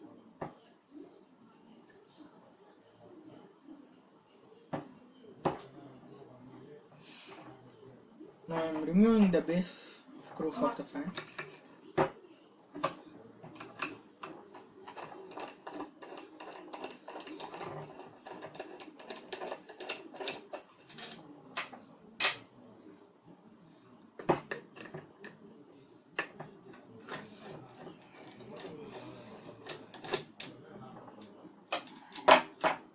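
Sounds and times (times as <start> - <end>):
tool clicking and scraping on metal: 12.8 - 22.4.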